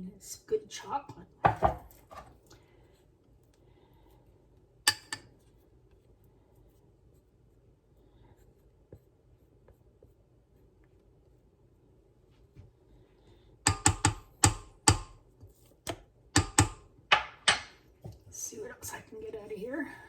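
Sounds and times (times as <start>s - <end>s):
utensil knocking against pot: 13.7s - 15.2s, 16.4s - 17.7s.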